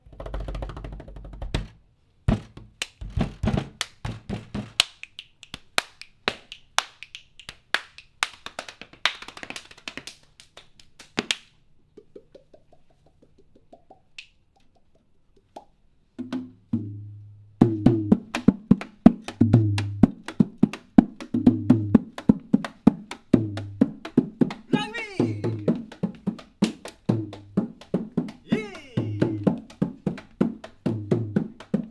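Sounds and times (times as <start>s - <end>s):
low thumps: 0.1s - 4.7s
body percussion hand strikes: 0.1s - 10.1s, 16.2s - 31.9s.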